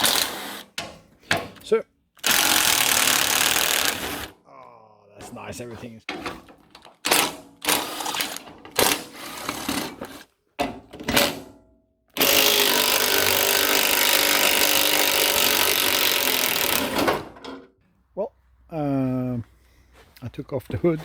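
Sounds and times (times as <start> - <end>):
power tool running: 0.0 - 0.8, 2.2 - 4.4, 7.2 - 9.8, 12.2 - 17.2.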